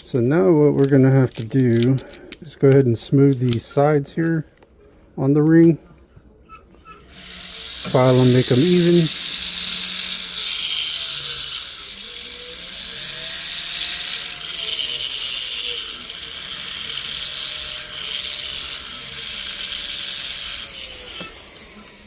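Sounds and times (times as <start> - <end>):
hand file rasping on metal: 7.6 - 21.8.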